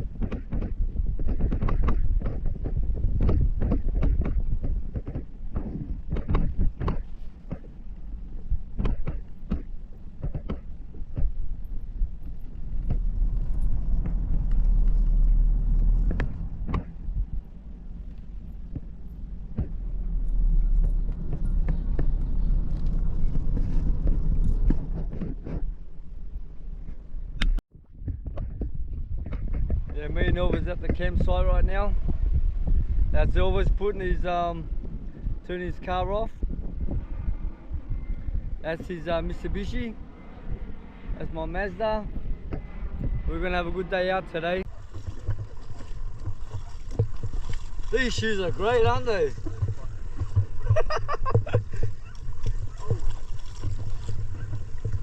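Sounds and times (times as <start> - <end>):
knocks and rattles: 0.0 - 34.5, 44.6 - 55.0
car driving over bumpy ground: 0.0 - 55.0
wind buffeting microphone: 0.0 - 55.0.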